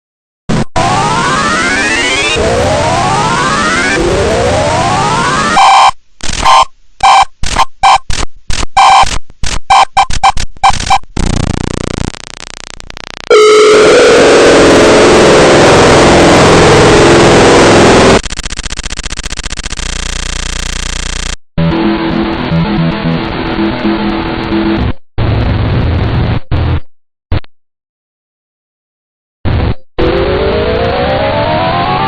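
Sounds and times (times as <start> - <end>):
harsh buzz: 0.5 - 6.6, 10.7 - 25.0
stuttering alert tones: 0.5 - 8.1, 8.8 - 9.1, 9.7 - 23.8
distorted static with low tone: 0.5 - 26.8, 29.5 - 32.0.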